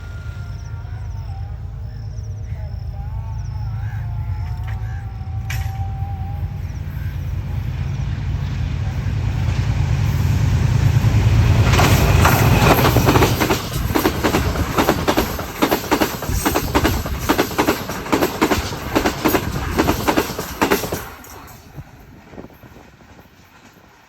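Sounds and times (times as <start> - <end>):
faint hum: 0.0 - 9.1
train rumble: 0.0 - 24.0.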